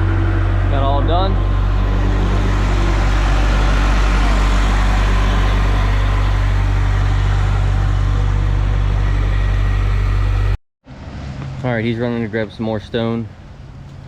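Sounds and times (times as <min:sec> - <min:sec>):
heavy engine idling: 0:00.0 - 0:10.6.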